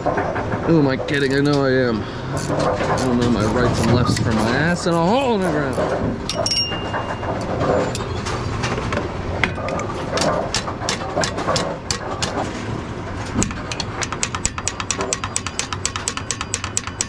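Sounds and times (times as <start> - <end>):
rapid even clicking: 0.0 - 6.1
machinery hum: 0.0 - 16.0
knocks and clanks: 0.0 - 17.0.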